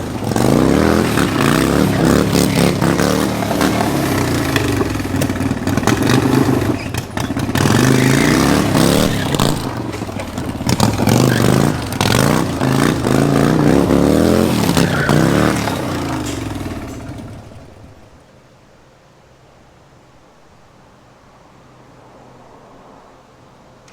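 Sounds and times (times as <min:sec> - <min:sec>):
engine revving: 0:00.0 - 0:18.2.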